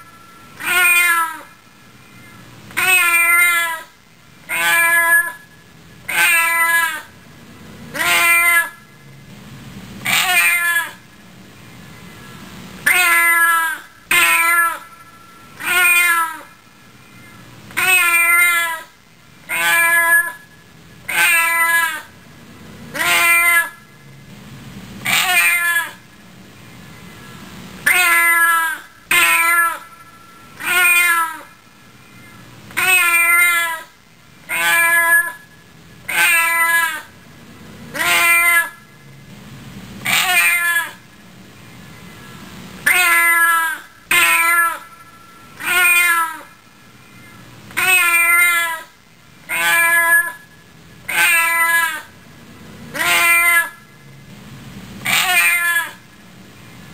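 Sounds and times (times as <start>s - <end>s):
cat meowing: 0.6s - 1.5s, 2.8s - 3.9s, 4.5s - 5.3s, 10.1s - 11.0s, 15.6s - 16.5s, 17.8s - 18.9s, 19.5s - 20.3s, 25.1s - 26.0s, 30.6s - 31.5s, 32.8s - 33.9s, 34.5s - 35.4s, 40.1s - 41.0s, 45.6s - 46.5s, 47.8s - 48.9s, 49.5s - 50.4s, 55.1s - 56.0s.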